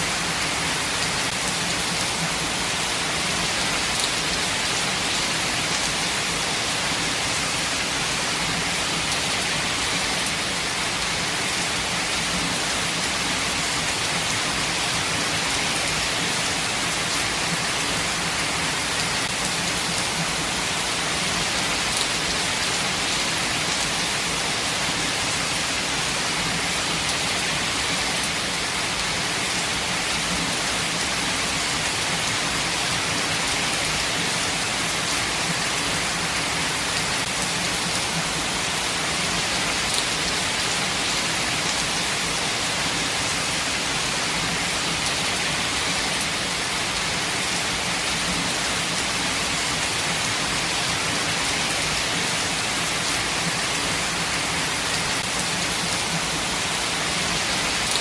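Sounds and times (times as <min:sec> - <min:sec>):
rain hiss: 0:00.0 - 0:58.0.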